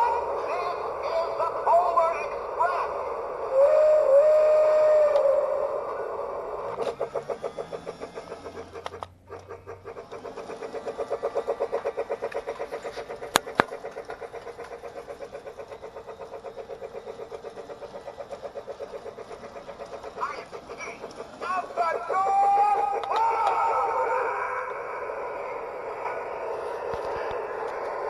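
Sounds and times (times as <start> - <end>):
toy train chugging on track: 0.0 - 28.0
sharp clicks: 5.9 - 23.9.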